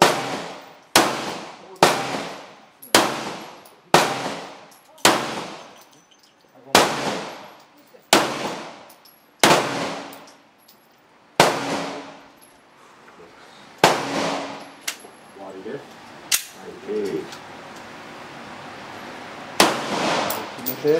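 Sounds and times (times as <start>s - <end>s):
pistol shots with echo: 0.0s - 5.7s, 6.7s - 7.5s, 8.1s - 8.8s, 9.4s - 10.2s, 11.4s - 12.2s, 13.8s - 14.8s, 19.6s - 20.6s.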